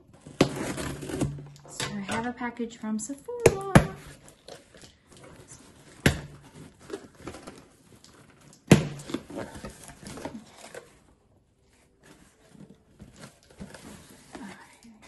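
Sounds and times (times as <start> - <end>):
packaging clicks and rustling: 3.6 - 15.0
sharp knocks on package: 8.7 - 9.3.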